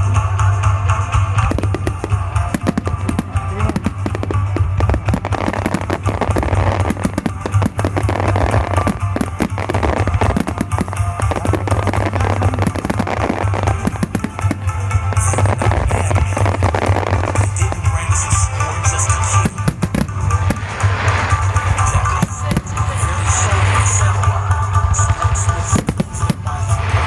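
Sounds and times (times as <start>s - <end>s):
fireworks bursting and crackling: 0.0s - 27.0s
music with heavy bass: 0.0s - 27.0s.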